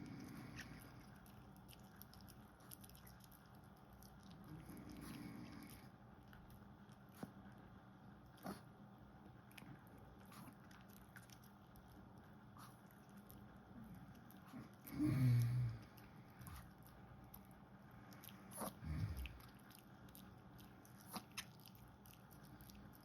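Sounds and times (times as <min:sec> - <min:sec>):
small animal chewing: 0:00.0 - 0:23.0.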